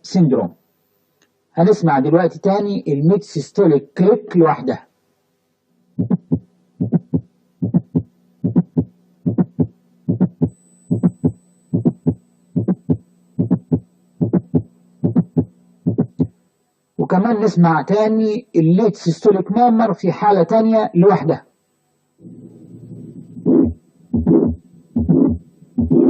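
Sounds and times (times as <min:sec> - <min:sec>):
steady low hum: 0:00.0 - 0:26.0
heartbeat sounds: 0:06.0 - 0:16.4, 0:23.5 - 0:26.0.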